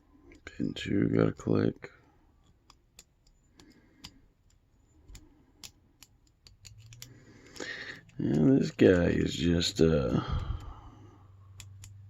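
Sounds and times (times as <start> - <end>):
lock pick clicking in padlock: 11.5 - 12.0.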